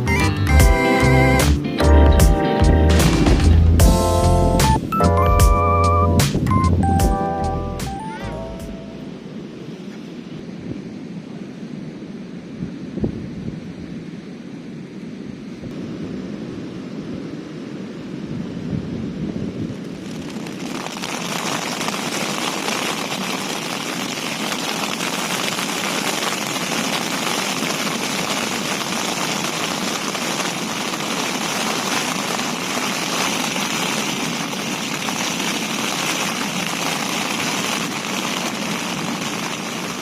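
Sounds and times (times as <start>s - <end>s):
heavy rain falling: 0.0s - 9.8s, 19.7s - 40.0s.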